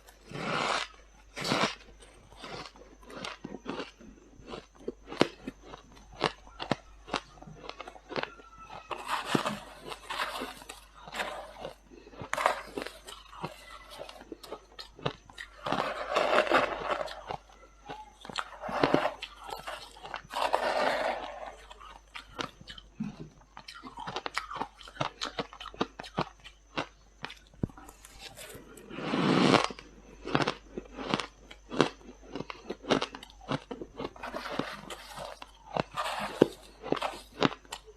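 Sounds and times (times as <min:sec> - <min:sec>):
person chewing frost crunching: 0:00.0 - 0:37.9.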